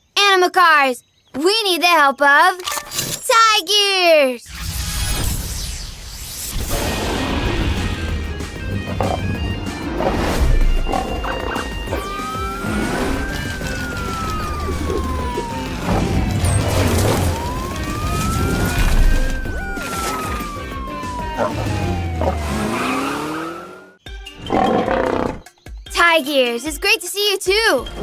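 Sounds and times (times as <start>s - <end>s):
action music: 4.5s - 26.9s
cartoon police siren wailing: 10.8s - 24.0s.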